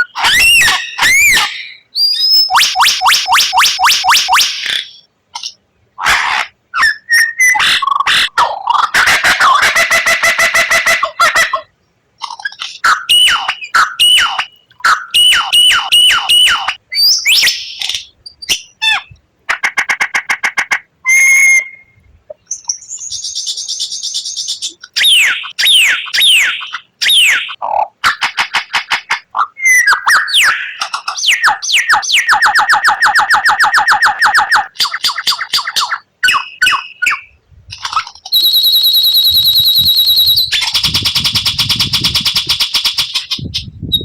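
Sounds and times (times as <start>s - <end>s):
songbird singing varied song: 0.0s - 5.6s, 11.6s - 19.2s, 21.1s - 27.6s, 35.4s - 44.0s.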